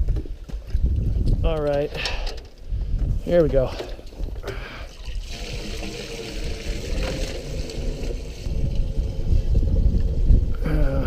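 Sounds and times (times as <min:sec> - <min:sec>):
water pouring from a bucket: 0:04.6 - 0:10.5
low microphone rumble: 0:05.2 - 0:11.0.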